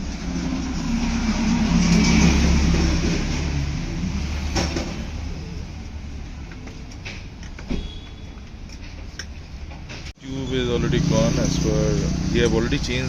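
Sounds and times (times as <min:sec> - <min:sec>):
vehicle engine passing by: 0:00.0 - 0:06.2, 0:10.3 - 0:13.0.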